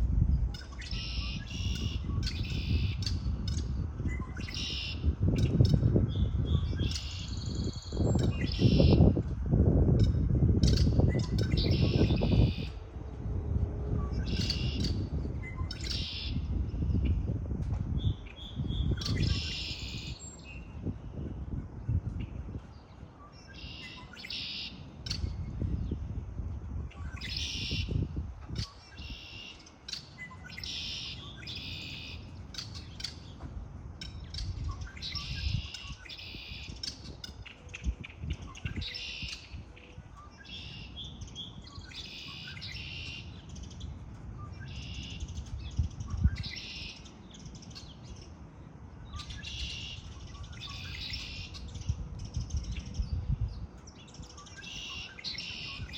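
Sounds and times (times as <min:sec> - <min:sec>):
songbirds chirping and singing: 0:00.2 - 0:55.9
low rumble: 0:09.4 - 0:19.3.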